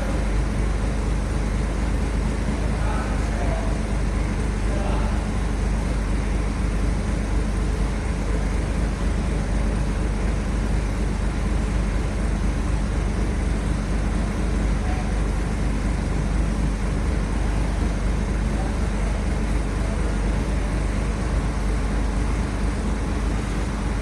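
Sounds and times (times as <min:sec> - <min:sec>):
heavy vehicle engine drone: 0:00.0 - 0:24.0
road noise: 0:20.5 - 0:24.0.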